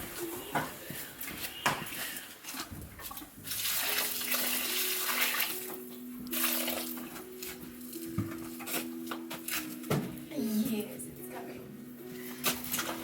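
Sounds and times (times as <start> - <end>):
water running and pouring: 3.0 - 7.2.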